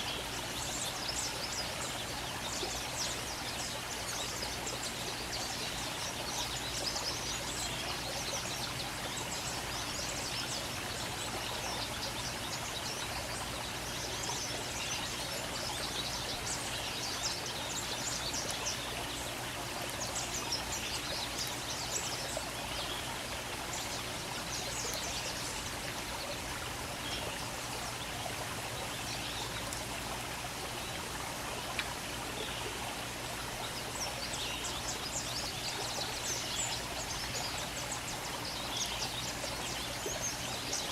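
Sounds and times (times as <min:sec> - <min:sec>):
running water rushing: 0:00.0 - 0:40.9
small birds chirping: 0:00.0 - 0:40.9.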